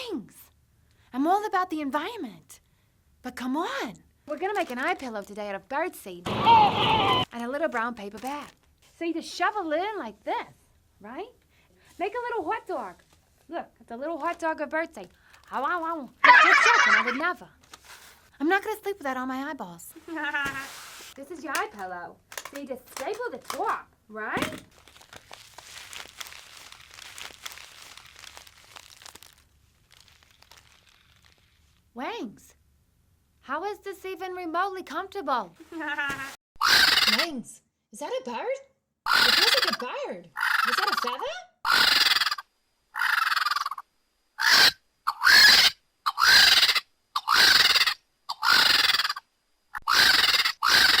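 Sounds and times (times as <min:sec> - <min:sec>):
paper bag crinkling: 0:04.3 - 0:05.5, 0:07.3 - 0:08.9, 0:17.5 - 0:18.3, 0:19.9 - 0:23.8, 0:24.4 - 0:31.9
bird screeching: 0:36.6 - 0:37.2, 0:39.1 - 0:39.8, 0:41.7 - 0:42.4, 0:43.0 - 0:43.8, 0:44.4 - 0:49.2, 0:49.8 - 0:51.0.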